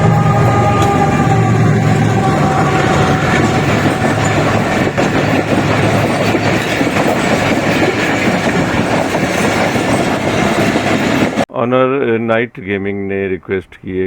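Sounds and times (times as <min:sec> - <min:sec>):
train rumbling on rails: 0:00.0 - 0:11.5
train wheels clattering over track: 0:00.0 - 0:11.5.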